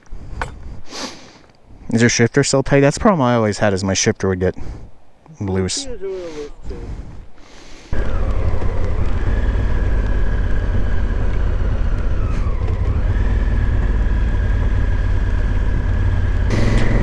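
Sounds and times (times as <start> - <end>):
wind and road noise: 0.0 - 17.0
motorcycle engine rumble: 8.0 - 17.0
whine: 8.0 - 17.0.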